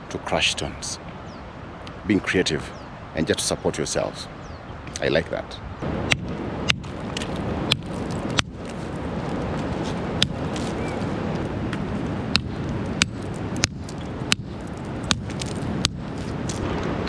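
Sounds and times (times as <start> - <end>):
steady rushing noise: 5.7 - 17.0
hammers striking rock: 12.3 - 16.0.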